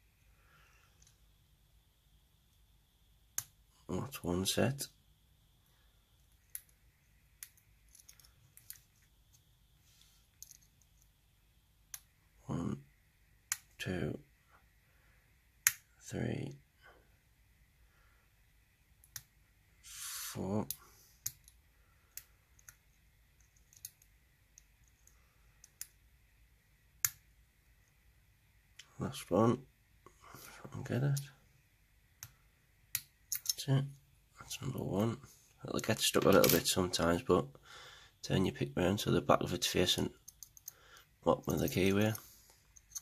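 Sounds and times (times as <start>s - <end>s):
lock pins clicking: 33.0s - 33.6s.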